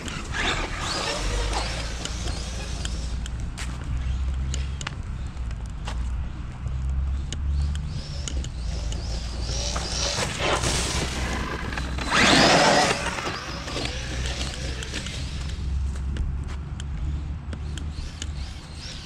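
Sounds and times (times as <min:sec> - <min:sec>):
rc truck electric motor whining: 0:00.0 - 0:03.3, 0:07.9 - 0:15.8.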